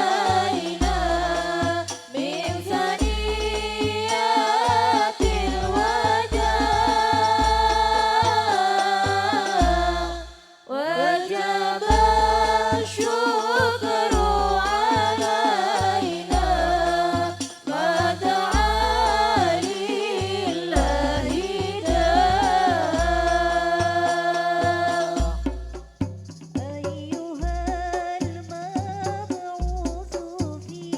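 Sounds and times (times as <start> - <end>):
devotional singing: 0.0 - 25.6
deep bass beat: 0.3 - 2.0, 3.0 - 4.1, 4.8 - 10.3, 11.9 - 13.0, 14.1 - 17.4, 18.0 - 19.6, 20.2 - 24.0, 24.7 - 28.6, 29.2 - 30.6.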